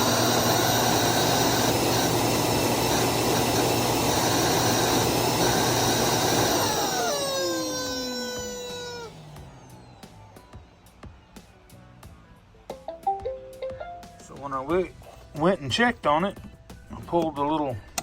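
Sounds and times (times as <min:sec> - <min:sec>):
suction motor running: 0:00.0 - 0:11.0
toy squeaker noise: 0:06.5 - 0:09.3.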